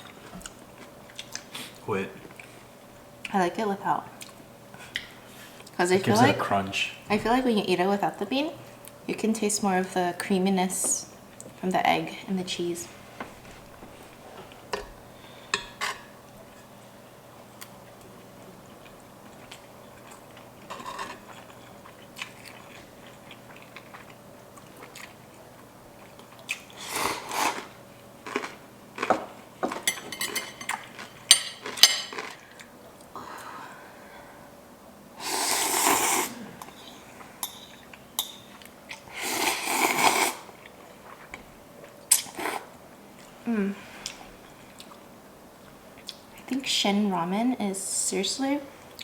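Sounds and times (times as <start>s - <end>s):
chewing and crunching: 17.6s - 33.1s, 44.1s - 45.1s
slurping noodles: 26.7s - 28.4s, 35.2s - 36.4s, 39.1s - 40.5s.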